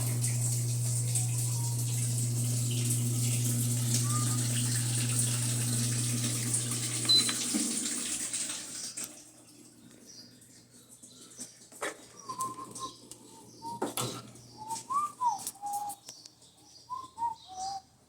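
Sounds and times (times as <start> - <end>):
washing machine low hum: 0.0 - 9.8
washing machine water rushing: 0.0 - 9.9.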